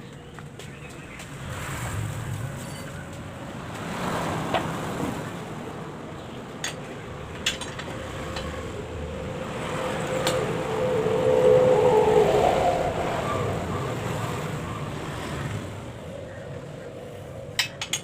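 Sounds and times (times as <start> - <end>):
vehicle engine passing by: 1.2 - 5.5, 8.0 - 16.1.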